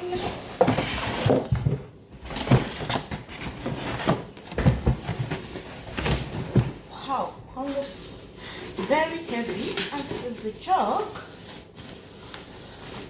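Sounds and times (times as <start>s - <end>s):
packaging rustling: 8.5s - 13.0s.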